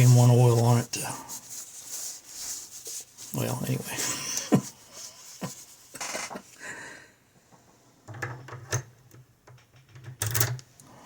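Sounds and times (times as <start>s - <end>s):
lock parts clattering: 8.1s - 10.7s
lockpicking tools clicking: 9.5s - 10.7s.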